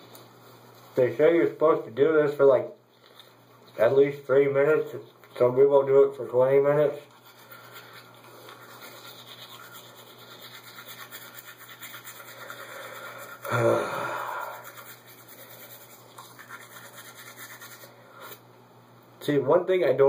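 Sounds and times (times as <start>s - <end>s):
toothbrush scrubbing teeth: 3.0s - 5.6s, 6.5s - 13.6s, 14.3s - 18.4s.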